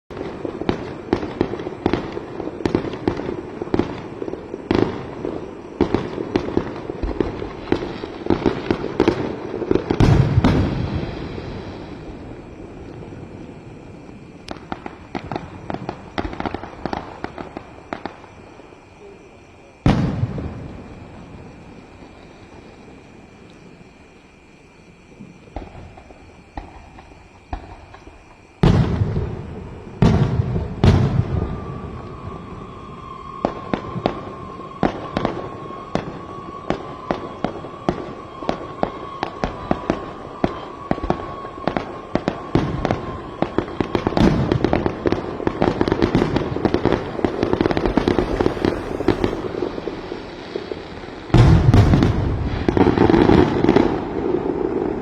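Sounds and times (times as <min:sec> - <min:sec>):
rapid firework crackling: 0:00.1 - 0:18.4, 0:43.0 - 0:55.0
heavy firework booms: 0:00.1 - 0:18.5, 0:19.8 - 0:23.8, 0:25.1 - 0:55.0
small firework pops: 0:00.1 - 0:19.2, 0:19.8 - 0:24.5, 0:25.1 - 0:32.2, 0:33.4 - 0:55.0.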